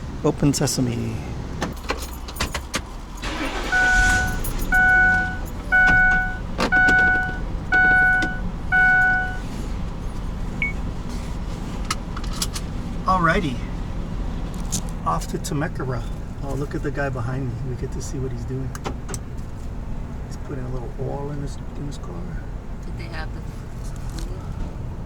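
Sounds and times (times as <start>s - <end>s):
electronic beeps: 3.7s - 9.4s, 10.6s - 10.8s.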